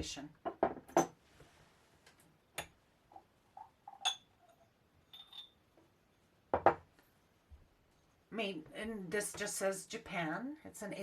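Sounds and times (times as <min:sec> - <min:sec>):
ceramic pieces clinking: 0:05.1 - 0:05.6.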